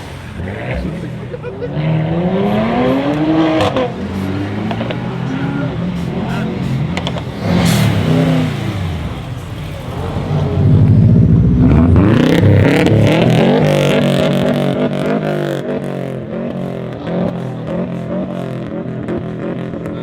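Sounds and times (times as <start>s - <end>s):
car engine revving: 0.0s - 20.0s
exhaust crackles and pops: 2.4s - 20.0s.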